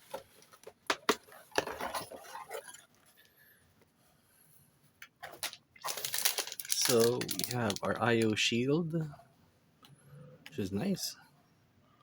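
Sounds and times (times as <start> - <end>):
cardboard rustling and scraping: 0.0 - 3.2.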